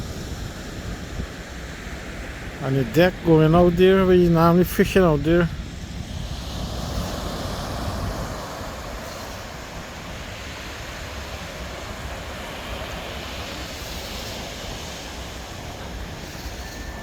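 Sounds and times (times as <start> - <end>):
gentle surf: 0.0 - 17.0
wind rumbling on microphone: 0.0 - 17.0.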